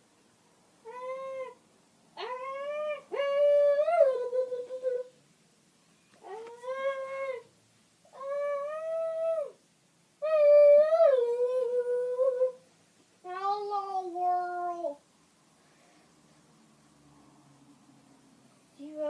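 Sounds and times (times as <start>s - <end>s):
person making singsong vocal notes: 2.2s - 5.2s, 10.2s - 12.6s.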